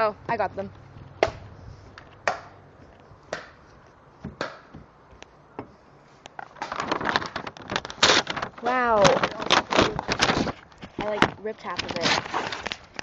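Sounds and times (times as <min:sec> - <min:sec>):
paper tearing and rustling: 0:06.4 - 0:13.0.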